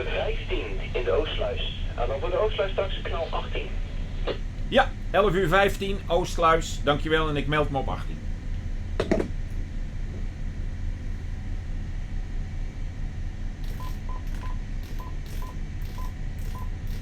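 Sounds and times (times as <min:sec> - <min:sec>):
boat engine drone: 0:00.0 - 0:17.0
short electronic key beeps: 0:13.6 - 0:17.0.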